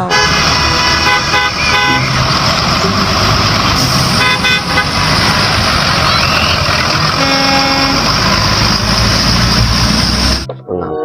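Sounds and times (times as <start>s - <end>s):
bus horn toots: 0.0s - 2.4s, 3.8s - 8.6s
bus engine rumbling: 0.0s - 10.8s.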